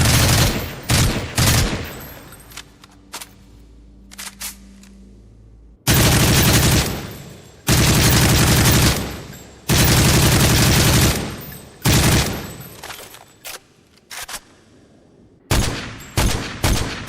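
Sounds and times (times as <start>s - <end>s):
automatic gunfire bursts: 0.0s - 1.9s, 7.7s - 12.4s.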